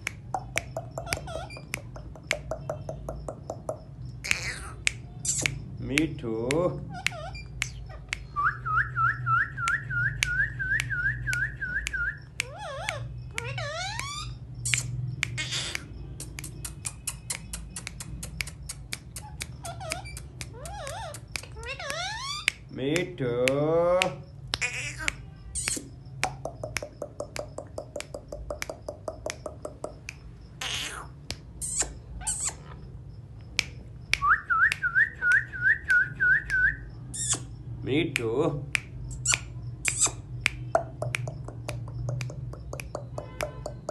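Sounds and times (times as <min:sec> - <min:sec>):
sharp clicks: 0:00.0 - 0:08.4, 0:09.6 - 0:43.9
parrot squawks: 0:00.4 - 0:01.9, 0:04.2 - 0:05.6, 0:12.4 - 0:15.9, 0:19.2 - 0:22.6, 0:24.6 - 0:25.8, 0:30.6 - 0:32.8.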